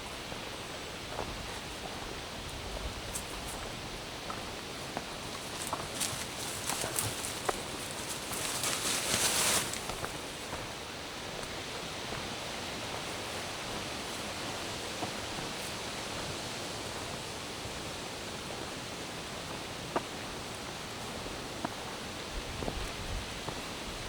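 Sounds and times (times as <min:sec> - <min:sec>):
forest ambience hiss: 0:00.0 - 0:24.0
faint ticks: 0:05.0 - 0:10.6
brief rustle: 0:05.6 - 0:10.2.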